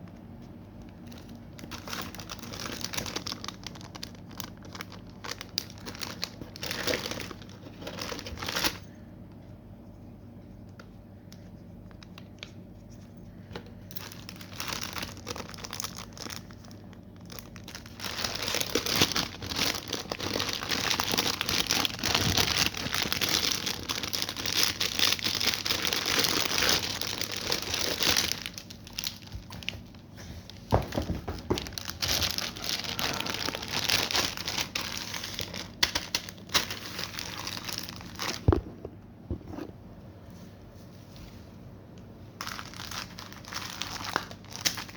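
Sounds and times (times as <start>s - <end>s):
packaging crumpled and torn: 0.8s - 8.9s, 13.4s - 38.6s, 42.4s - 44.9s.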